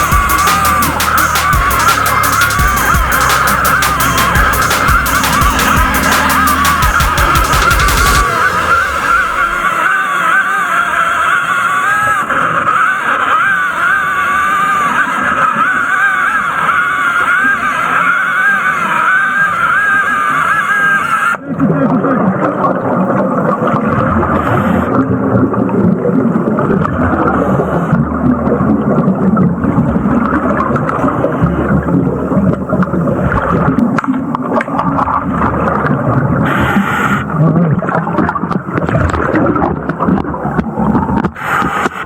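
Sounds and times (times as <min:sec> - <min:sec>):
hissing bursts: 0:00.0 - 0:10.0
chainsaw cutting underwater: 0:00.0 - 0:42.0.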